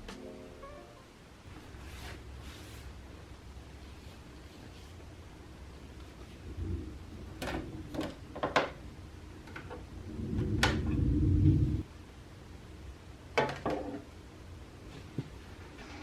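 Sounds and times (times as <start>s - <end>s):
low rumble: 9.9s - 11.8s.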